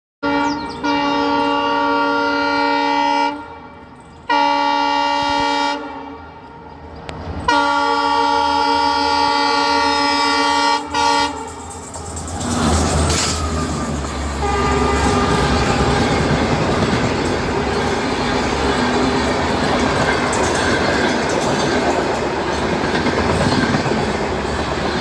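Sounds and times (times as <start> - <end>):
train horn blasts: 0.2 - 11.9, 13.1 - 19.3.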